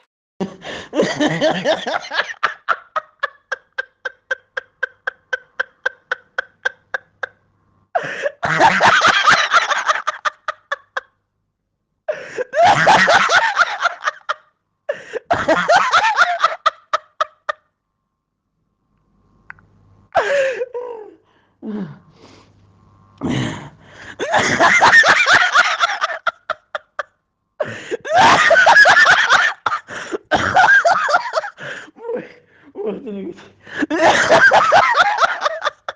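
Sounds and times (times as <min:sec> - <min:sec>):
hearty laughter: 0:00.4 - 0:11.2, 0:12.1 - 0:17.7, 0:24.0 - 0:35.9.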